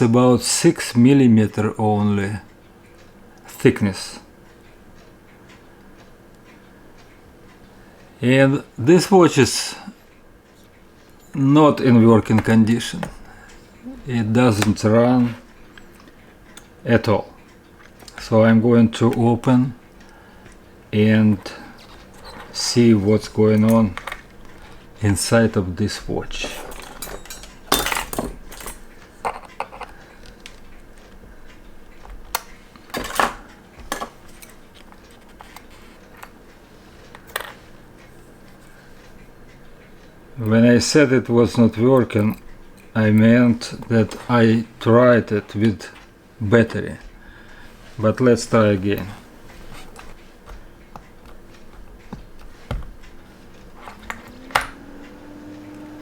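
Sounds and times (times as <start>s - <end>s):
small tools clicking and tapping: 21.4s - 24.9s, 26.0s - 36.4s, 37.1s - 37.7s, 48.8s - 56.0s.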